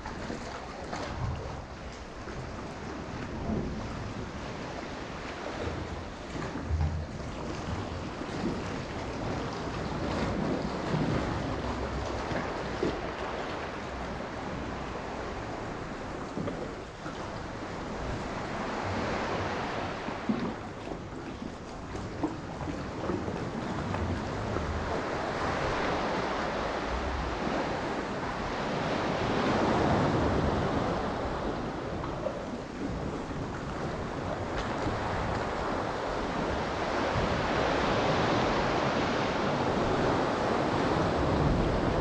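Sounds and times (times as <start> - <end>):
sea water washing and surging: 0.0 - 42.0
wind noise on microphone: 0.0 - 42.0.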